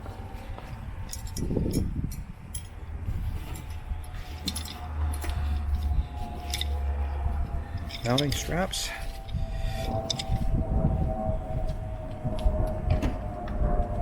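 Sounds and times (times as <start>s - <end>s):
low rumble: 0.0s - 14.0s
strap buckles clinking: 1.0s - 2.8s, 3.4s - 6.8s, 7.7s - 9.4s.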